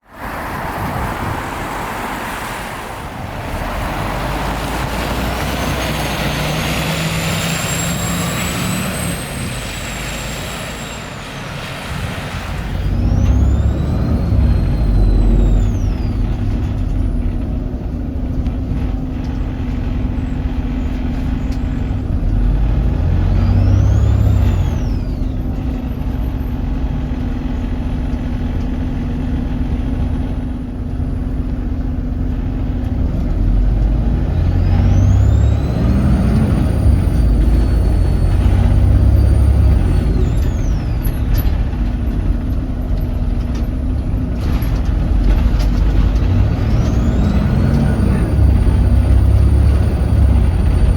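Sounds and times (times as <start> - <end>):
bus diesel engine pulling away: 0.0 - 50.9
turbocharger whistle: 5.5 - 16.6, 22.8 - 25.9, 34.3 - 41.7, 46.3 - 50.9.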